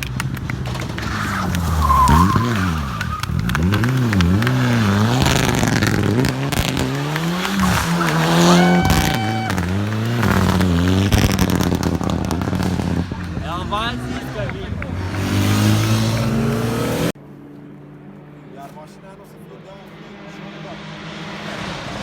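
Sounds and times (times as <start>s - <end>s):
race car engine revving: 0.0s - 17.2s.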